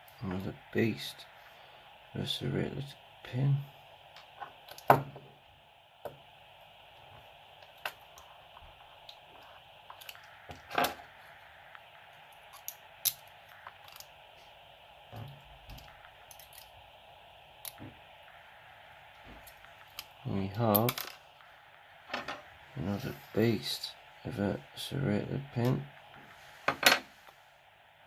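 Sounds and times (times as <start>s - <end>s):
faint steady hiss: 0.0s - 28.0s.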